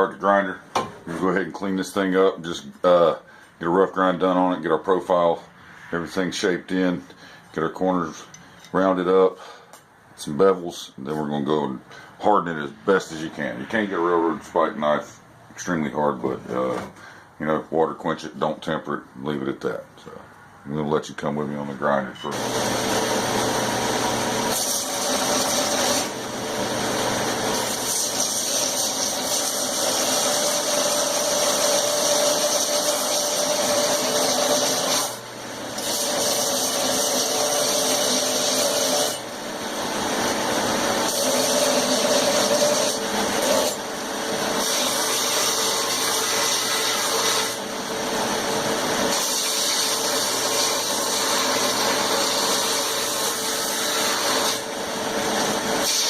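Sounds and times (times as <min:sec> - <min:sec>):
grinder motor hum: 0:22.3 - 0:56.0.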